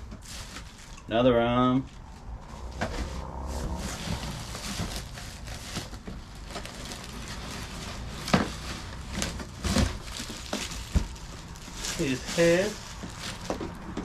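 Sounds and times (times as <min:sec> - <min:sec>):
packaging rustling: 0:00.0 - 0:01.1, 0:02.9 - 0:14.0
handling knocks and clicks: 0:13.0 - 0:14.0.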